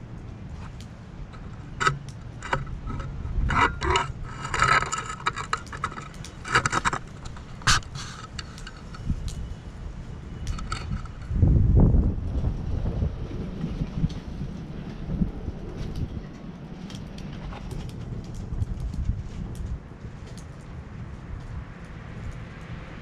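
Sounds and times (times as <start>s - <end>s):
metal parts clinking and scraping: 1.3s - 9.1s, 10.5s - 11.3s.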